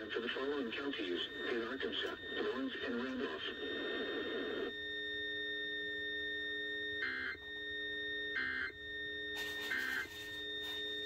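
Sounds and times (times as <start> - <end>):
steady hum of tones: 0.0 - 11.0
harsh digital data bursts: 9.4 - 11.0.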